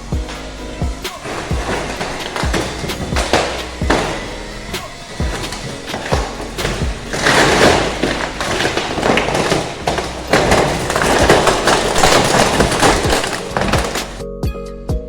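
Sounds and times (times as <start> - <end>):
faint music: 0.0 - 14.2
steel roll-up door rattling: 0.0 - 14.2.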